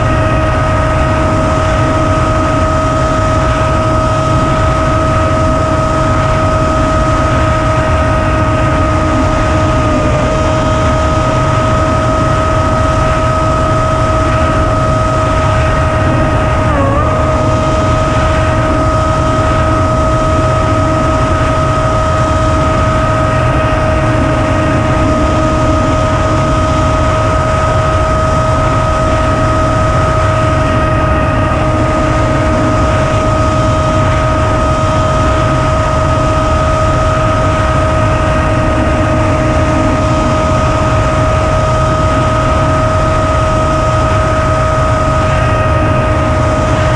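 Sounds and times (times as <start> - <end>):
electric motor high whine: 0.0 - 46.9
wind rush: 0.0 - 46.9.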